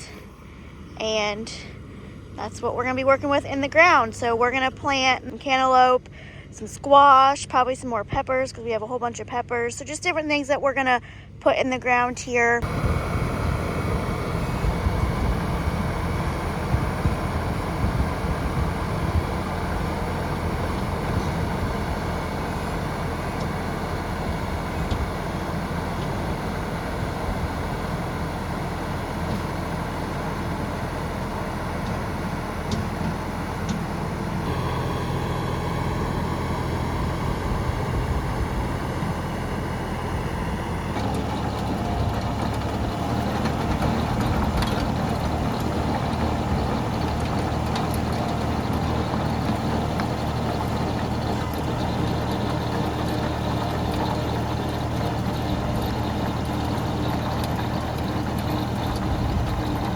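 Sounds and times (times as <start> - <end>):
small engine running: 12.6 - 59.9.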